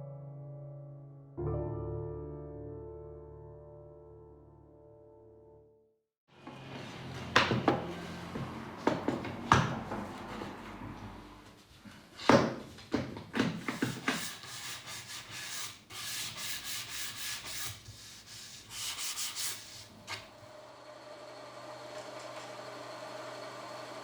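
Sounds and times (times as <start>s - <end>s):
hand sanding strokes: 13.6s - 20.4s.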